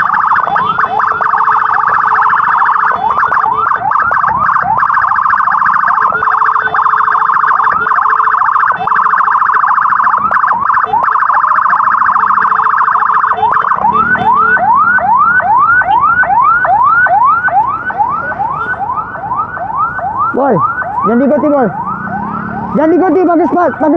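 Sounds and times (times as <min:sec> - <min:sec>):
electronic siren warbling and yelping: 0:00.0 - 0:23.9.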